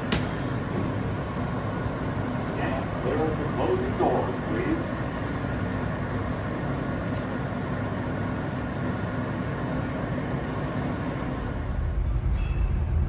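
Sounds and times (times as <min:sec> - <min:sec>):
subway train rumbling: 0:00.0 - 0:13.0.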